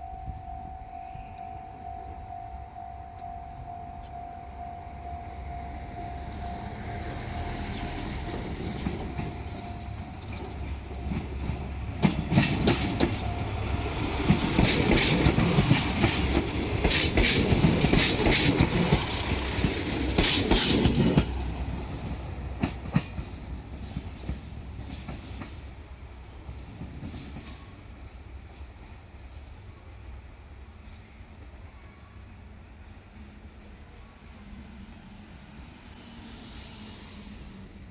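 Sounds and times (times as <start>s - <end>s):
diesel railcar passing: 0.0s - 37.9s
train wheels clanking over rail joints: 7.0s - 25.6s.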